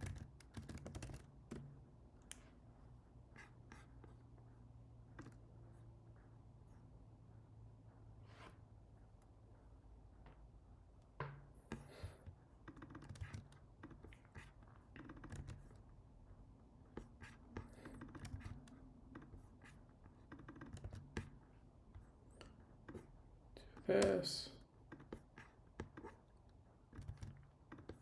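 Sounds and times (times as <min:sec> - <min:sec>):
computer keyboard typing: 0:00.0 - 0:01.7, 0:12.6 - 0:14.2, 0:14.9 - 0:15.8, 0:17.7 - 0:19.4, 0:20.2 - 0:21.4, 0:26.9 - 0:28.0.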